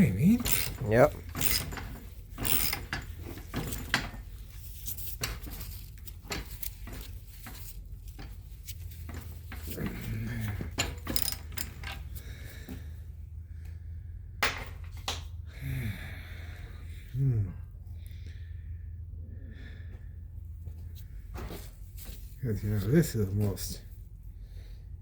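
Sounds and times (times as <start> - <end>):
steady low hum: 0.0 - 25.0
metallic clicks and knocks: 0.2 - 4.2, 10.6 - 12.1
person grunting: 17.1 - 17.7.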